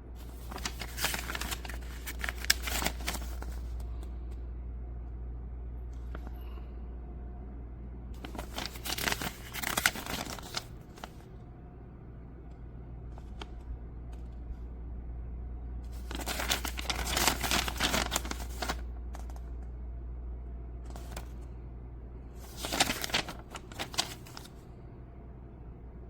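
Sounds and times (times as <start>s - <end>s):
steady low hum: 0.0s - 26.0s
crinkling handling noise: 0.2s - 4.1s, 8.2s - 11.2s, 15.9s - 19.7s, 20.8s - 21.5s, 22.4s - 24.6s.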